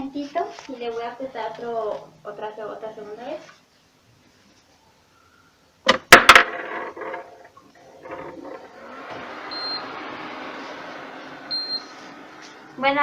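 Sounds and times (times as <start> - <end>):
refrigerator fans and compressor humming: 8.9 - 13.0.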